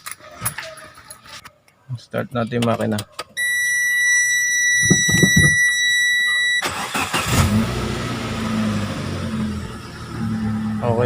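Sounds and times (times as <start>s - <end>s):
high warning tone: 3.4s - 6.9s
car engine starting and idling: 6.5s - 11.0s.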